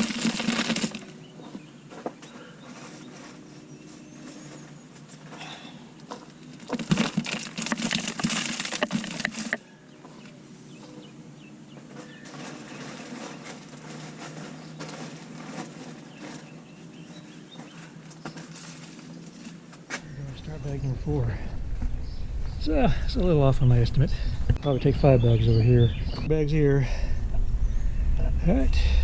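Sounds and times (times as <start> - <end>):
mulch crunchy rustling: 0.0 - 5.3, 6.0 - 9.6, 11.9 - 22.8
quiet scratching and rustling: 0.0 - 25.2.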